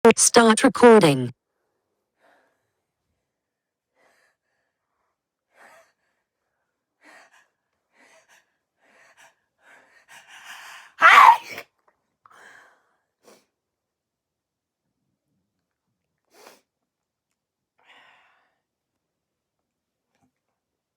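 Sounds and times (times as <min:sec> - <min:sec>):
person sneezing: 0:11.0 - 0:11.6.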